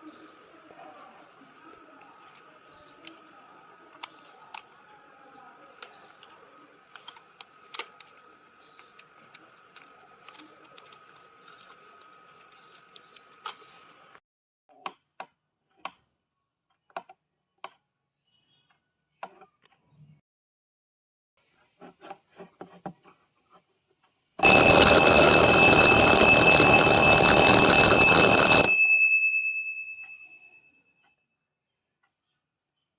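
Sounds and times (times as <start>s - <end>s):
alarm clock ringing: 24.4s - 30.3s.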